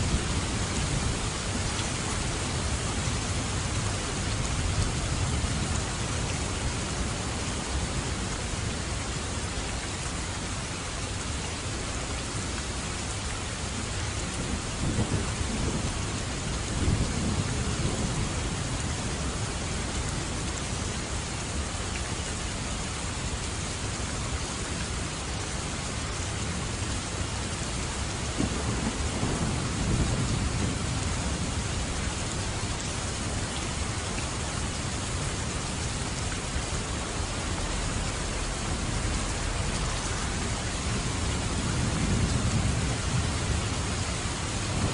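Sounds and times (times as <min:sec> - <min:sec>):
heavy rain: 0:00.0 - 0:44.9
distant rolling thunder: 0:14.3 - 0:19.6, 0:28.2 - 0:32.5, 0:37.5 - 0:44.9.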